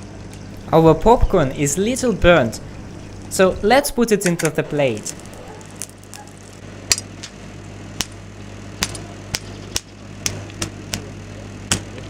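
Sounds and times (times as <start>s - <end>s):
transformer low hum: 0.0s - 12.0s
popcorn popping: 4.2s - 12.0s.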